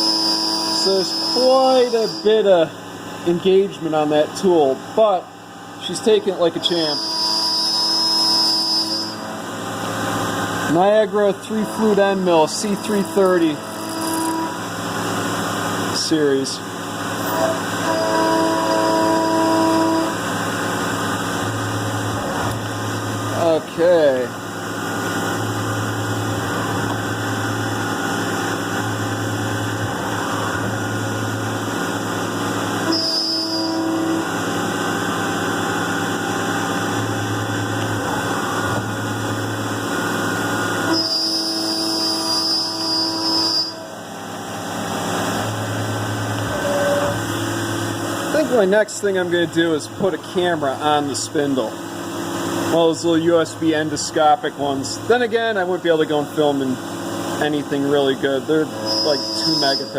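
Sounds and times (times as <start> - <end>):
mill cutting steel: 0.0 - 59.9
steady hum and hiss: 0.0 - 59.9
coolant running: 0.2 - 6.9, 9.2 - 33.0, 33.6 - 41.0, 43.8 - 46.5, 47.2 - 59.9
pitched ring from cutting: 11.7 - 14.8, 58.7 - 59.9.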